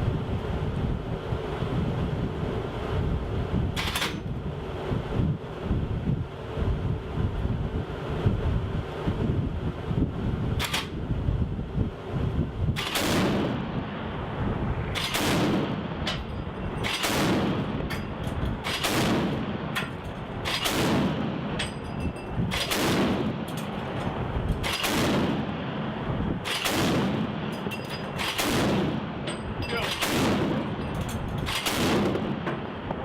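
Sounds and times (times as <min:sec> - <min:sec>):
chain gun firing single shots: 0:03.8 - 0:04.2, 0:10.6 - 0:11.0, 0:12.8 - 0:13.7, 0:14.9 - 0:21.8, 0:22.4 - 0:25.5, 0:26.4 - 0:32.6.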